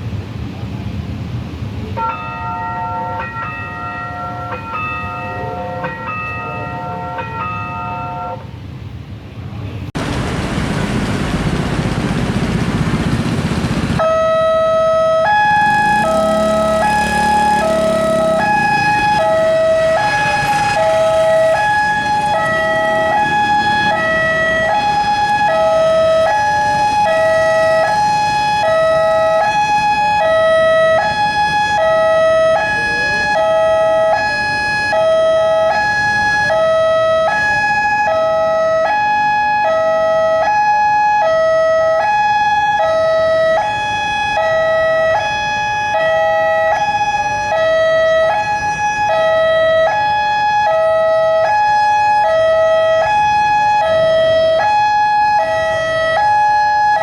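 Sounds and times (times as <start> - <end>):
road traffic: 0.0 - 57.0
two-tone crossing alarm: 14.0 - 57.0.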